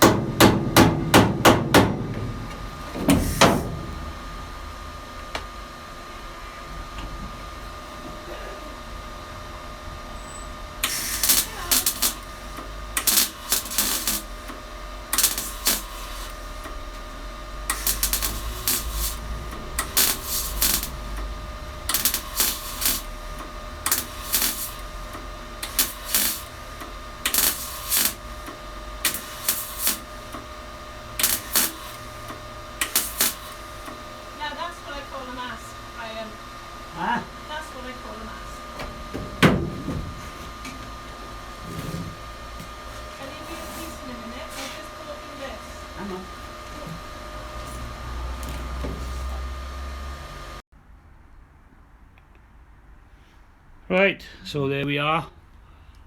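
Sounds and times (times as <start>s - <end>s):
crackling welds: 0.0s - 5.5s, 10.1s - 36.7s, 41.6s - 50.6s.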